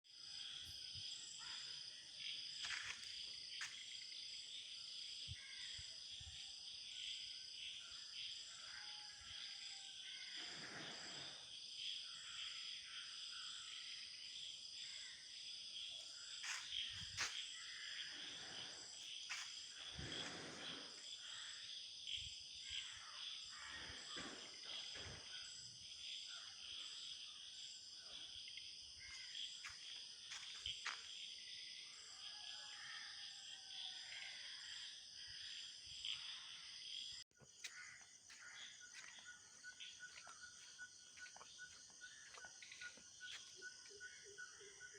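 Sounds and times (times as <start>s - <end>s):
crickets and insects chirping: 0.1s - 44.9s.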